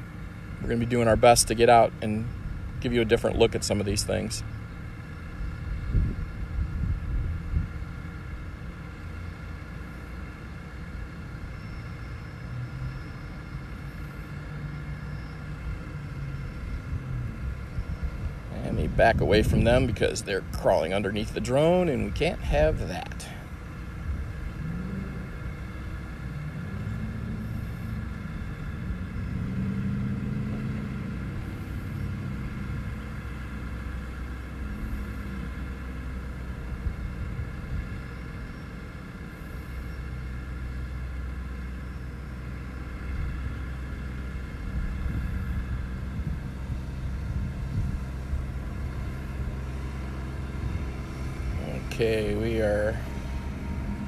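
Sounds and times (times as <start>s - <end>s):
steady whine: 0.0s - 54.0s
vehicle engine running: 0.0s - 54.0s
low rumble: 44.2s - 54.0s.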